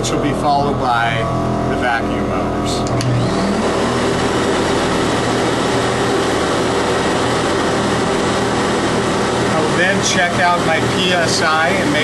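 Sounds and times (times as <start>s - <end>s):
pump hum: 0.0s - 12.0s
vacuum motors whining and rushing: 0.0s - 12.0s.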